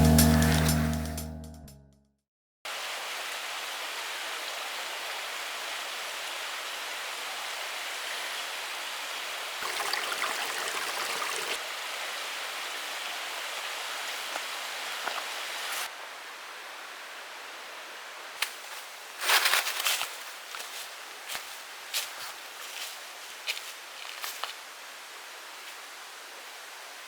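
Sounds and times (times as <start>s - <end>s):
background music: 0.0s - 2.0s
water hissing: 9.6s - 11.6s.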